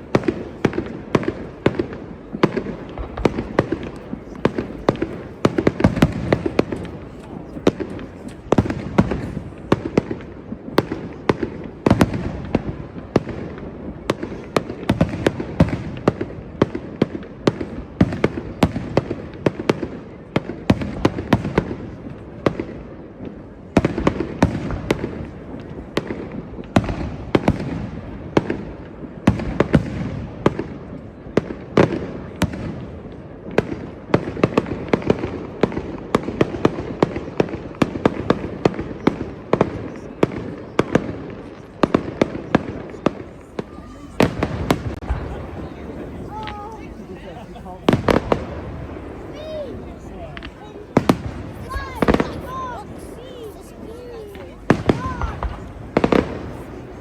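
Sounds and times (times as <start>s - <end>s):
fireworks bangs and crackles: 0.0s - 57.0s
rumble of echoing reports: 43.3s - 57.0s.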